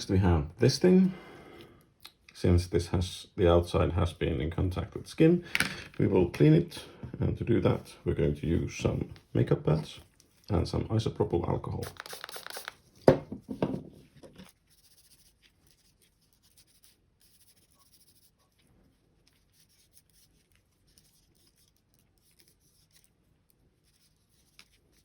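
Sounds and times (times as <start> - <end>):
pad rubbing plastic mouse shell: 11.8 - 12.8.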